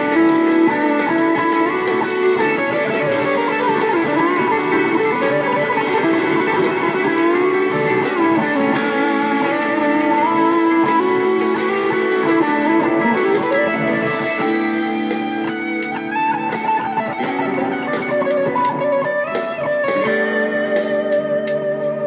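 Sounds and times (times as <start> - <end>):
overdriven electric guitar: 0.0 - 22.0.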